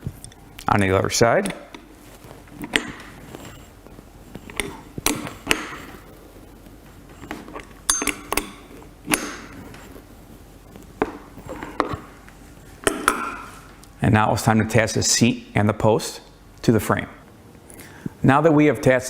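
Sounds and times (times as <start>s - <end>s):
wrench clinking on metal nuts: 7.2s - 9.6s.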